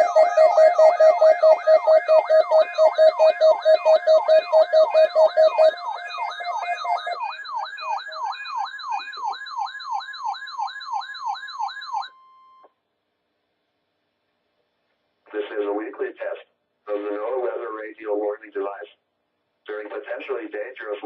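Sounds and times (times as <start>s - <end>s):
steady high tone: 0.0s - 9.6s
pulsing beeps: 0.0s - 12.1s
wailing alert siren: 0.0s - 12.2s.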